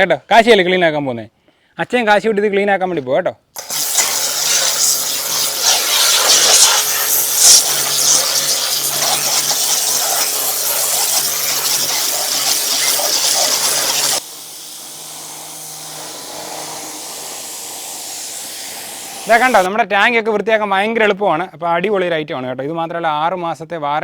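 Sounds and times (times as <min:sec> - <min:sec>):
pressure washer spray hissing: 0:03.6 - 0:19.7
pump motor humming: 0:03.6 - 0:19.7.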